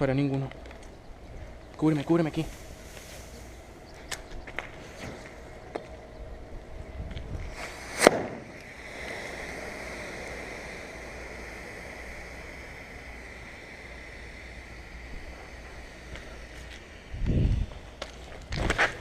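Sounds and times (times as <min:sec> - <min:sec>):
faint high-pitched hum: 0:00.0 - 0:19.0
airsoft gun shot: 0:07.9 - 0:08.5.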